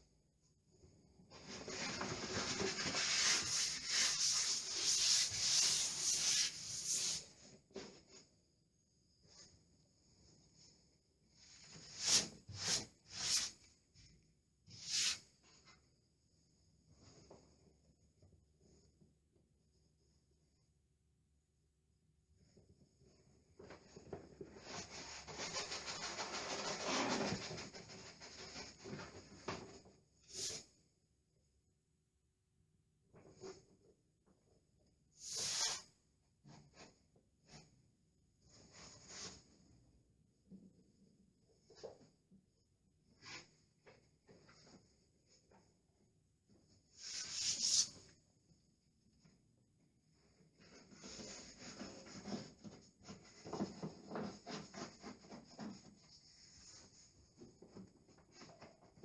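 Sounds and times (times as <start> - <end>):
paper brushing rub on wall: 1.5 - 7.4, 11.7 - 13.6, 14.7 - 15.3, 35.2 - 36.0, 47.0 - 48.1.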